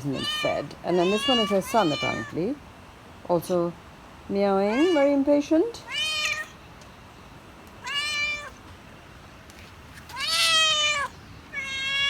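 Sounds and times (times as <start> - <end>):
cat meowing: 0.1 - 2.4, 4.7 - 5.1, 5.9 - 6.6, 7.8 - 8.6, 10.1 - 12.0.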